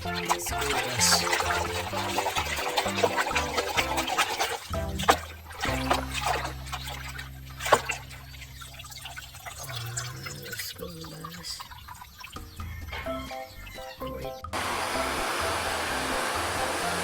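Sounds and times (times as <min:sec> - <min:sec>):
water dripping and trickling: 0:00.0 - 0:15.0.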